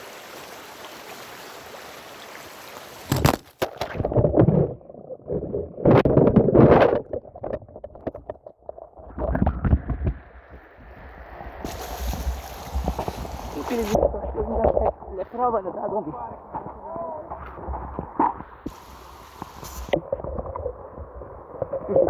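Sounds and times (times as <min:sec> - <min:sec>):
running stream water: 0:00.0 - 0:04.2, 0:08.5 - 0:22.0
muffled underwater sloshing: 0:07.2 - 0:22.0.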